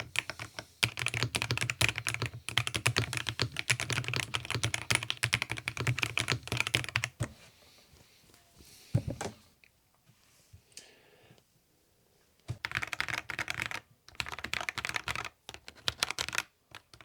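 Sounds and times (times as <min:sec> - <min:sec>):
mechanical keyboard typing: 0:00.0 - 0:07.2, 0:12.6 - 0:17.0.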